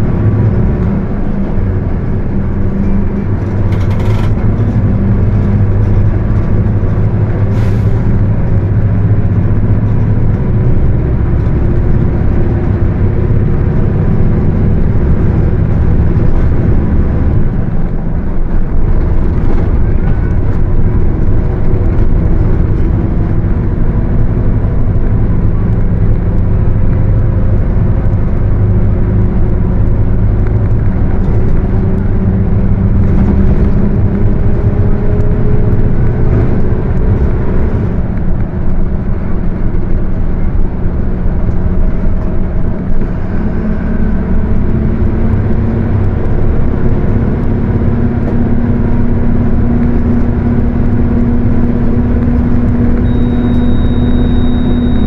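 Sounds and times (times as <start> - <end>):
bus diesel engine running: 0.0 - 55.0.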